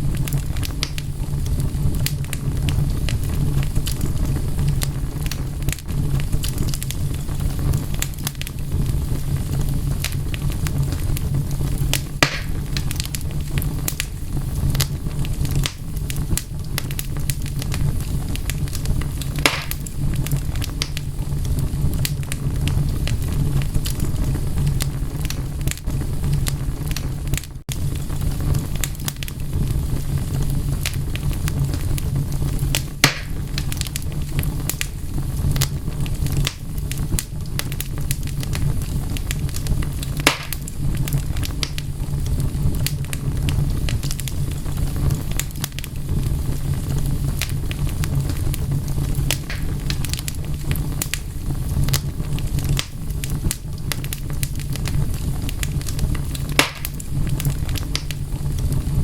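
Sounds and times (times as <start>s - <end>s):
steady low rumble: 0.0s - 59.0s
wood fire crackling: 0.0s - 59.0s
sharp pops: 12.2s - 12.6s, 19.4s - 19.9s, 33.0s - 33.4s, 40.2s - 40.6s, 49.4s - 50.0s, 56.5s - 57.0s.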